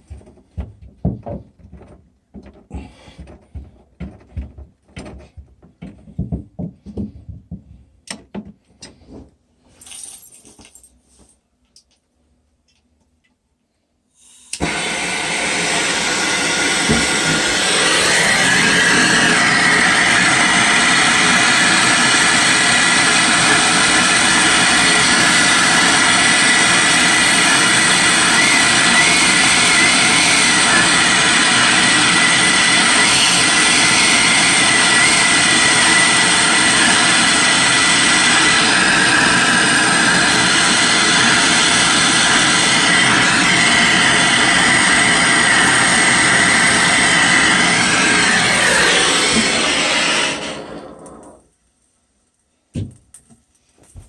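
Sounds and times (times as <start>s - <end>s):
gas torch hissing: 14.1s - 51.4s
gas torch lighting: 14.1s - 51.5s.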